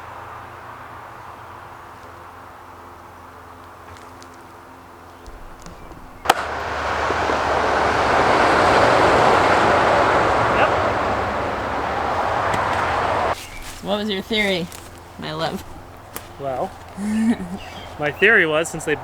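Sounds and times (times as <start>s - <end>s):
loud rushing noise: 5.3s - 13.4s
engine idling: 5.3s - 19.0s.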